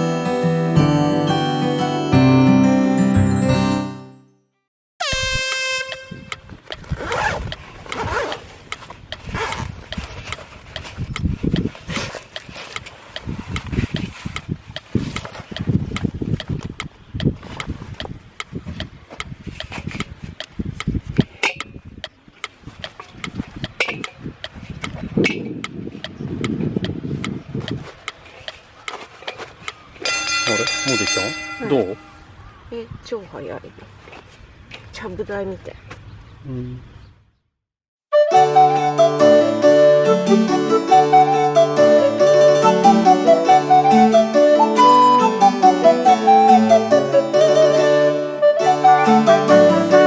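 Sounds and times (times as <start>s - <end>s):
short ringing tone: 30.1s - 32.3s.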